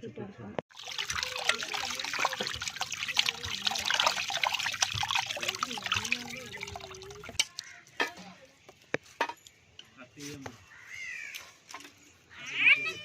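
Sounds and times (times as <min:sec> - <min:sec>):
water pouring and splashing: 0:00.7 - 0:08.5.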